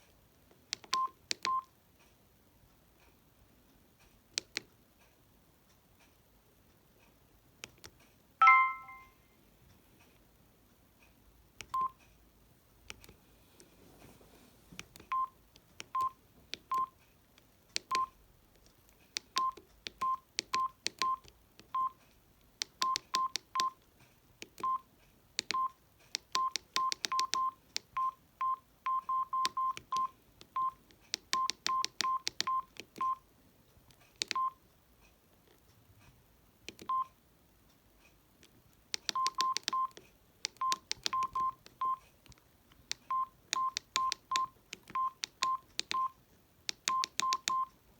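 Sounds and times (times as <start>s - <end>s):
keypad clicks: 0.7s - 1.6s, 4.3s - 4.7s, 7.6s - 9.1s, 14.8s - 16.9s, 17.7s - 21.9s, 22.6s - 23.8s, 24.4s - 24.8s, 25.4s - 28.1s, 28.9s - 33.2s, 33.9s - 34.6s, 36.6s - 37.1s, 38.4s - 46.1s, 46.7s - 47.7s
phone keypad beeps: 0.8s - 1.7s, 8.4s - 9.1s, 11.7s - 12.0s, 15.1s - 16.9s, 17.8s - 18.1s, 19.3s - 22.0s, 22.8s - 23.8s, 24.6s - 24.8s, 25.5s - 33.2s, 34.2s - 34.6s, 36.8s - 37.1s, 39.0s - 42.0s, 43.1s - 47.7s.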